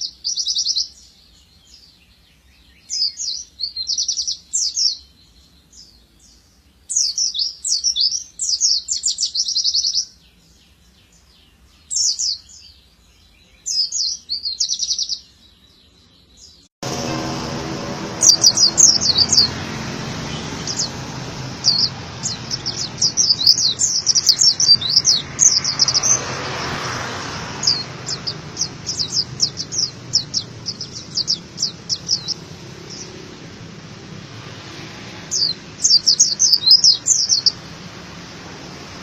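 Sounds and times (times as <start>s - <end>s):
bird twittering: 0.0s - 10.4s, 18.1s - 26.4s, 27.4s - 34.0s, 35.3s - 37.6s.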